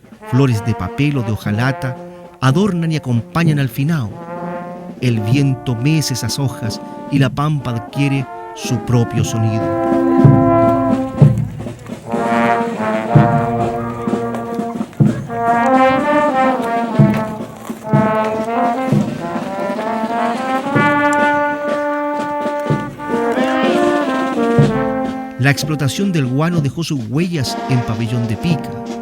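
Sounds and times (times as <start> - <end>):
brass chords: 0.0 - 29.0
low drum beat: 0.0 - 29.0.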